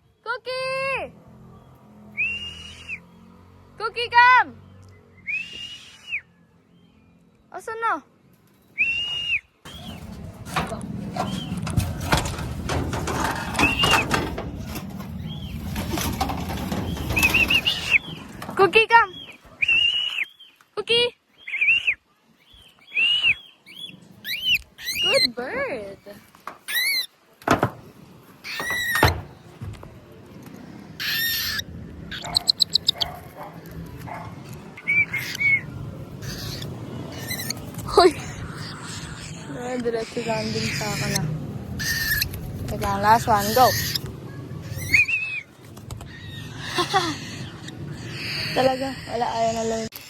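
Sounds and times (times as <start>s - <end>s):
cockatiel whistled call: 2.2s - 3.0s, 5.2s - 6.3s, 19.6s - 20.4s, 21.4s - 22.0s, 22.8s - 25.2s, 34.8s - 35.7s, 44.8s - 45.5s
short whistled notes: 19.6s - 20.3s
low rumble: 29.2s - 49.9s.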